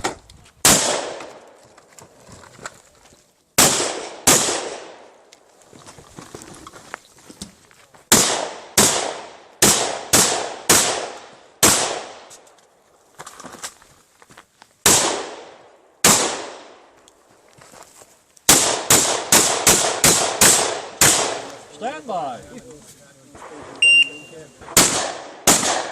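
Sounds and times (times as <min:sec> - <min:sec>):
shotgun shots with echo: 0:00.6 - 0:01.4, 0:03.6 - 0:05.0, 0:08.1 - 0:12.3, 0:14.8 - 0:16.8, 0:18.5 - 0:21.6, 0:24.6 - 0:25.9.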